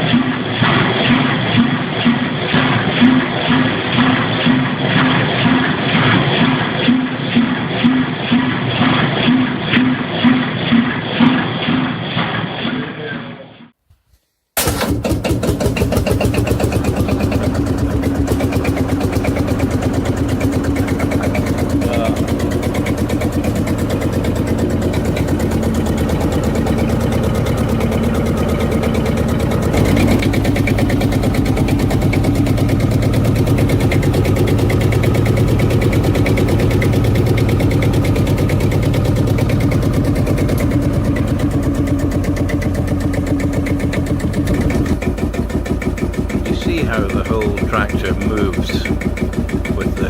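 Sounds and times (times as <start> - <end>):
single-cylinder tractor engine running: 14.6 - 50.0.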